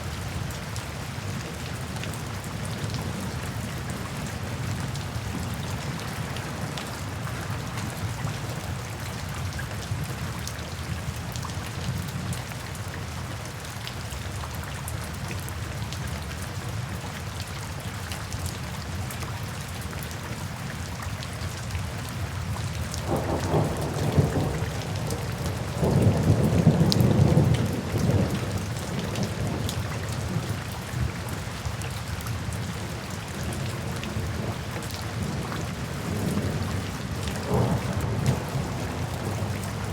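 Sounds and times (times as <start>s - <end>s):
steady rainfall: 0.0s - 39.9s
thunder rumbling: 23.0s - 28.7s, 36.0s - 39.9s.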